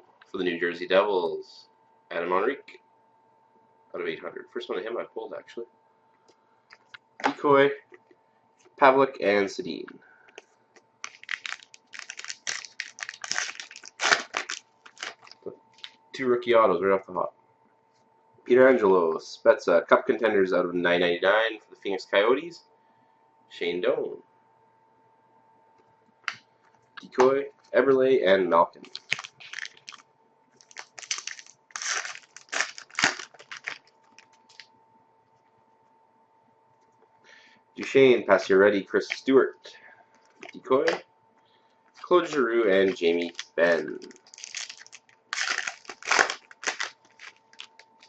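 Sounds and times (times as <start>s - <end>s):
wrapper tearing and crinkling: 11.0s - 15.9s, 28.8s - 30.0s, 30.6s - 34.6s, 42.0s - 48.0s.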